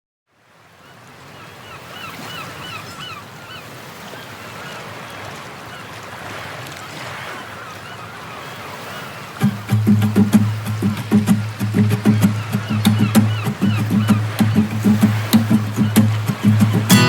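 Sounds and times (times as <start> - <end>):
short repeated bird calls: 7.5 - 17.0
steady rushing noise: 9.4 - 17.0.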